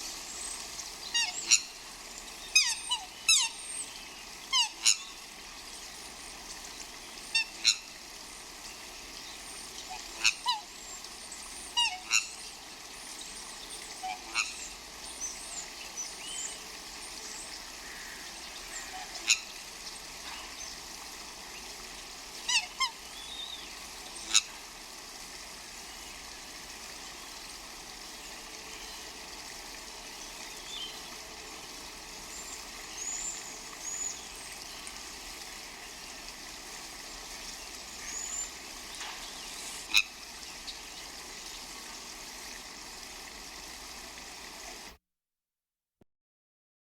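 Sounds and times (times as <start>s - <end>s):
brook water flowing: 0.0s - 45.0s
swans honking: 1.1s - 1.9s, 2.5s - 5.3s, 7.2s - 8.0s, 9.7s - 10.8s, 11.7s - 12.4s, 13.9s - 14.8s, 17.7s - 20.6s, 22.4s - 23.1s, 24.2s - 24.7s, 37.6s - 41.2s
small birds chirping: 32.3s - 35.0s, 37.6s - 41.7s.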